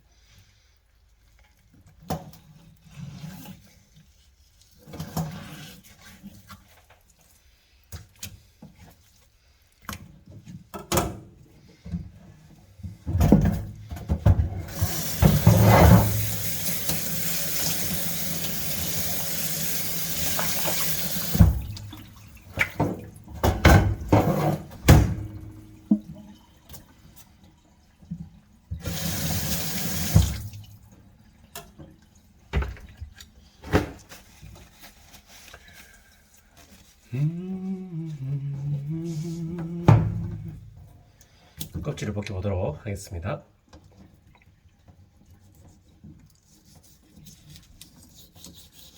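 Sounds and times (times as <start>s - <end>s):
tap running into sink: 13.2s - 19.2s, 19.8s - 26.3s, 28.8s - 30.6s.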